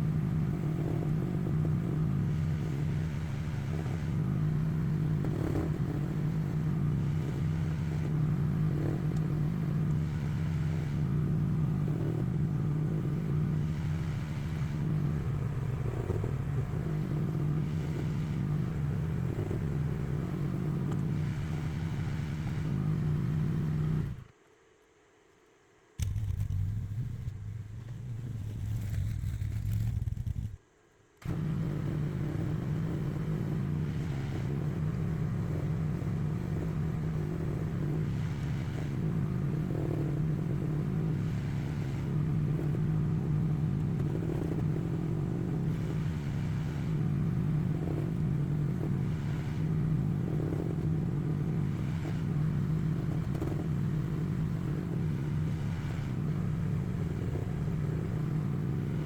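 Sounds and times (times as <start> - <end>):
excavator engine running: 0.0 - 59.0
digging scrapes and clatter: 26.0 - 30.6.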